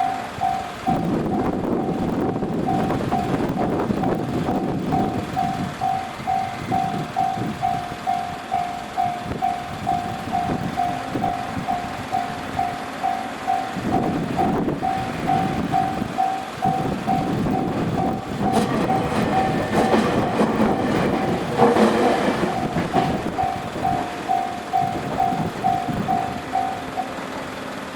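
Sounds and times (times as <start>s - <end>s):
level-crossing warning bell: 0.0s - 27.9s
train wheels rumbling and clattering: 0.0s - 27.9s.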